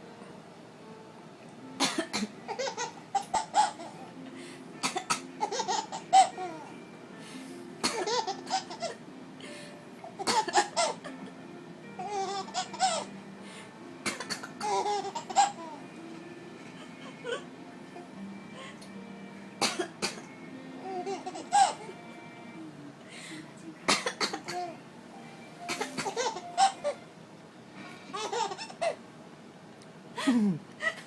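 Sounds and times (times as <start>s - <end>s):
faint background music: 0.0s - 31.0s
woman pretend coughing: 1.8s - 2.4s, 23.9s - 24.7s, 30.2s - 30.6s
baby laughing: 2.5s - 4.1s, 5.4s - 6.7s, 7.8s - 9.0s, 12.0s - 13.1s, 14.6s - 15.8s, 20.8s - 22.0s, 25.7s - 27.0s, 28.1s - 29.0s.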